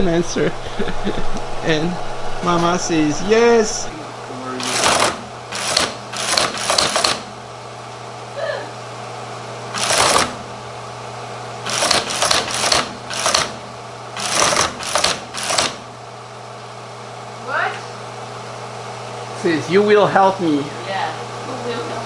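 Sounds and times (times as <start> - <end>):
machine motor humming: 0.0 - 8.3, 9.1 - 22.0
teleprinter typing clatter: 4.6 - 7.3, 9.8 - 10.4, 11.7 - 13.6, 14.2 - 15.8.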